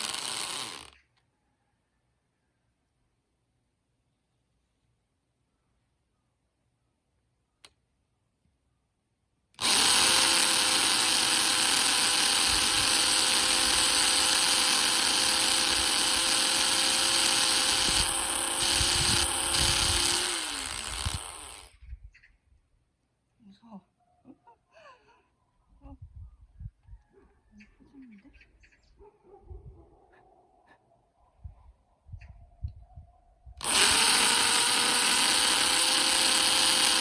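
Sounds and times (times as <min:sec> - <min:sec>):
electric power drill: 0:00.0 - 0:01.0, 0:09.6 - 0:21.7, 0:33.6 - 0:37.0.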